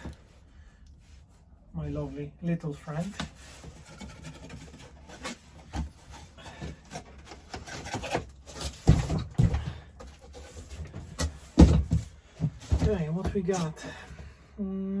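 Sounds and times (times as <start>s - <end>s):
cardboard rubbing and scraping: 3.0s - 13.7s.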